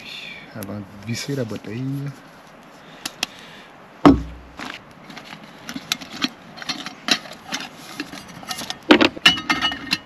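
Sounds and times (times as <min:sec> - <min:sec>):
hard objects clicking and knocking: 0:04.1 - 0:10.0
objects clattering: 0:04.1 - 0:10.0.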